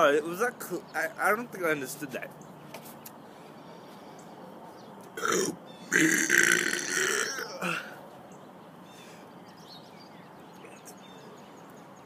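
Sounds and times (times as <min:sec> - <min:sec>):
loud rough burp: 0:05.2 - 0:08.0.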